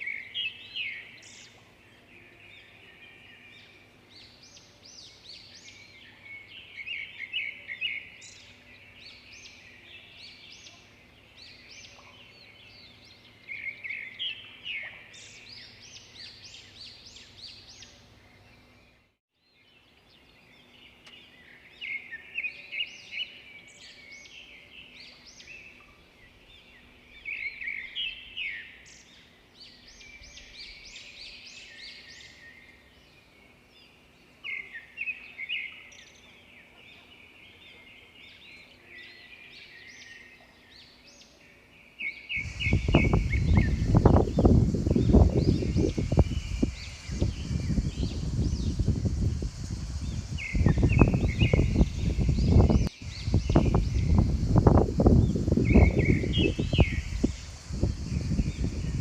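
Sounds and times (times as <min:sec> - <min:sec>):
songbirds chirping and singing: 0:00.0 - 0:59.0.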